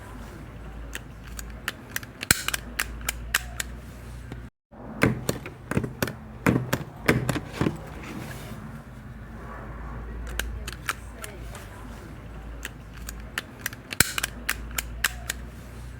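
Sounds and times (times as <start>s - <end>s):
stapler clicking: 1.0s - 7.4s, 12.6s - 15.5s.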